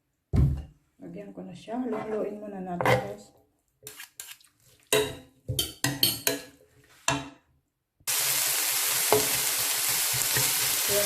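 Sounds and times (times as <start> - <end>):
metal utensil clinking on cookware: 4.9 - 6.5
food sizzling in frying pan: 8.1 - 11.0.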